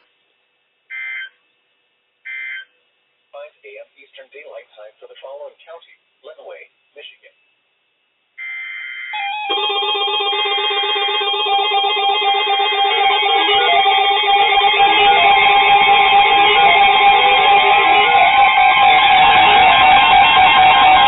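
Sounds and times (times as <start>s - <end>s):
guitar music: 10.2s - 21.0s.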